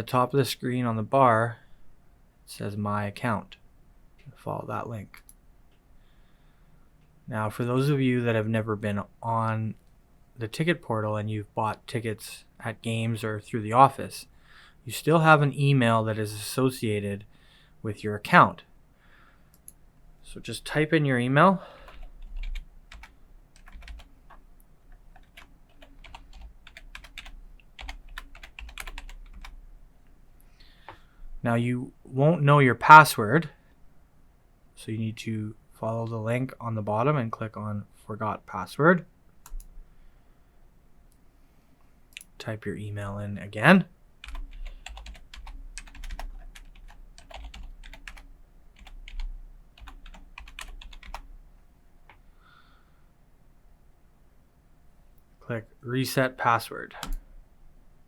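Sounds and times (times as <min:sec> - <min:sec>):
computer keyboard typing: 0:21.9 - 0:29.6, 0:44.2 - 0:51.3, 0:57.0 - 0:57.2.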